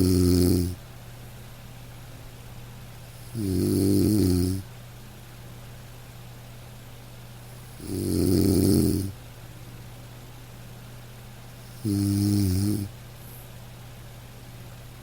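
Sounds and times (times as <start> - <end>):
person snoring: 0.0 - 0.8, 3.2 - 4.6, 7.7 - 9.2, 11.7 - 12.9
faint low hum: 0.0 - 15.0.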